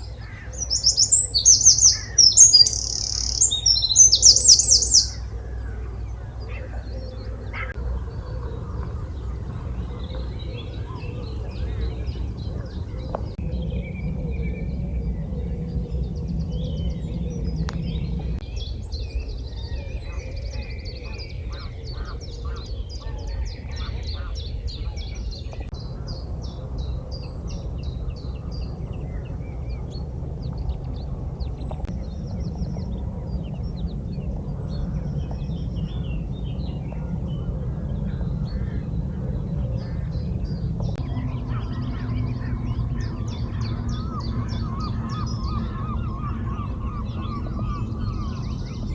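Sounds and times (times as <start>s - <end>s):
birds singing and chirping: 0.0s - 48.9s
steady low rumble: 0.0s - 48.9s.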